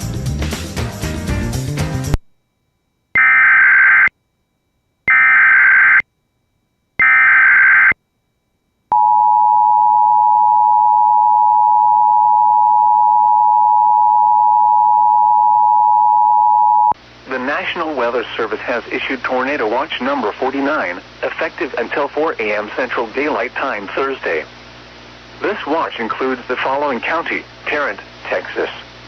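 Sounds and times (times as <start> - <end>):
music: 0.0 - 2.2.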